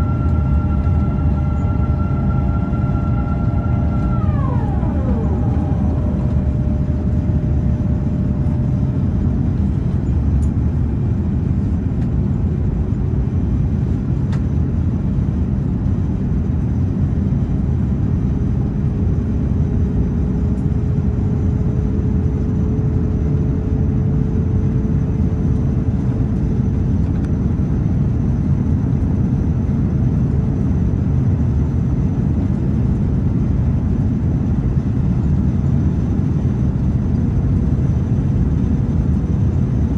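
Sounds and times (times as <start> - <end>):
faint steady whine: 0.0 - 15.1
jet engine and airflow roar: 0.0 - 39.9.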